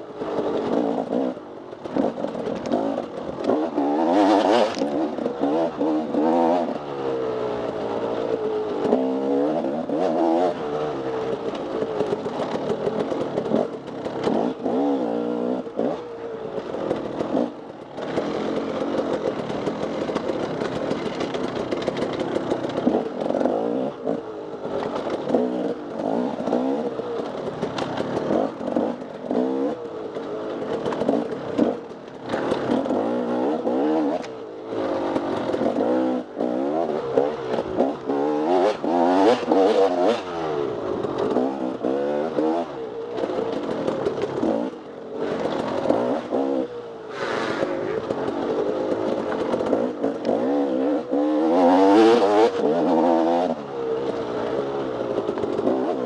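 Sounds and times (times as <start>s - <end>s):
dirt bike engine revving: 0.1s - 56.0s
bike clatter: 16.6s - 23.5s, 27.2s - 29.2s.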